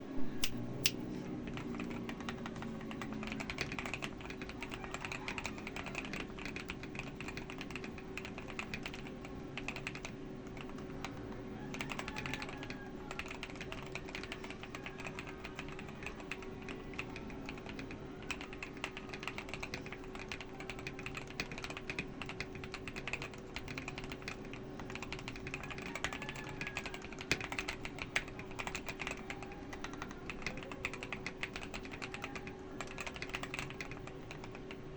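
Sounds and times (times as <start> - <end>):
low hum: 0.0 - 2.2
mechanical keyboard typing: 0.3 - 34.9.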